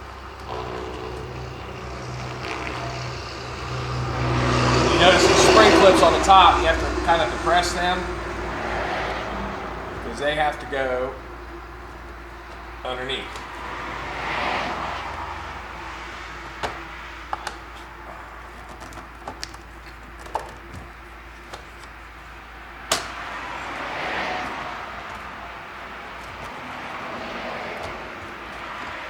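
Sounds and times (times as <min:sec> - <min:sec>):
rushing noise: 0:00.0 - 0:17.3
steady low hum: 0:00.0 - 0:27.2.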